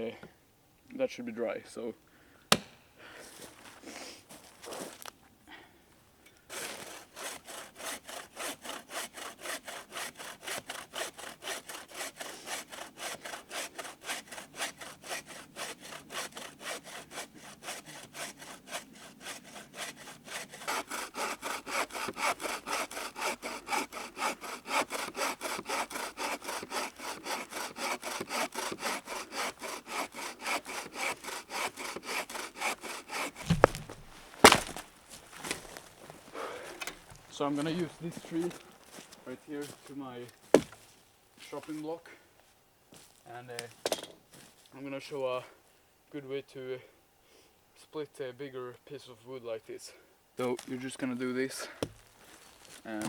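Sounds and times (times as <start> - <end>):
hand saw cutting log: 6.5 - 35.8, 40.5 - 40.8
sharp knocks: 33.4 - 34.8, 40.5 - 40.8.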